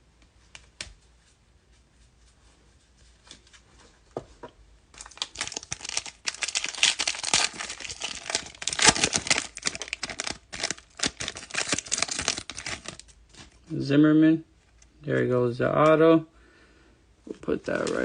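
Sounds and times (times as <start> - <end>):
plastic wrapper crinkling: 4.9 - 13.8, 17.3 - 18.0.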